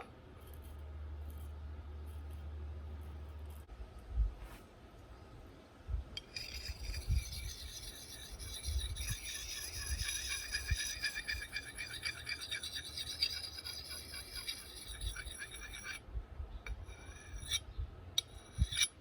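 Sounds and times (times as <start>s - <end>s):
axe scraping on whetstone: 6.2s - 16.0s, 16.7s - 19.0s
metal clinking against stone: 6.2s - 16.0s, 16.7s - 17.6s, 18.2s - 19.0s.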